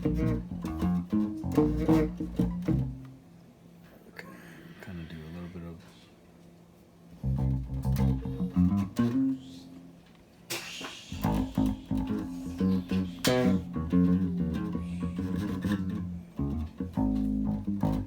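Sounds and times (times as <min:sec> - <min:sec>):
electric bass guitar plucked notes: 0:00.0 - 0:03.2, 0:07.2 - 0:09.4, 0:11.2 - 0:18.0.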